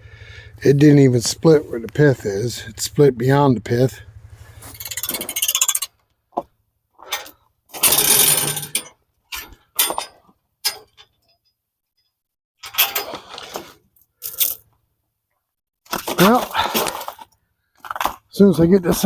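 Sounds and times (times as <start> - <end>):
four-wheeler engine idling: 0.0 - 6.0.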